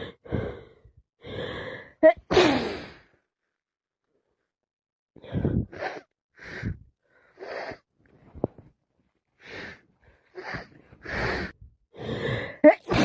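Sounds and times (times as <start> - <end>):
person gasping and sniffing: 0.0 - 3.1, 9.4 - 13.0.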